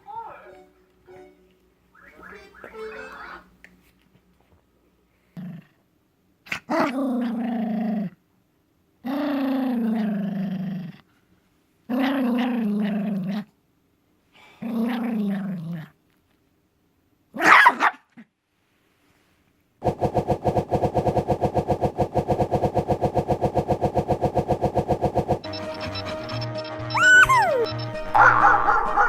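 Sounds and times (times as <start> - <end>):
dog growling: 5.3 - 5.8, 6.5 - 8.2, 9.0 - 11.0, 11.9 - 13.5, 14.6 - 16.0.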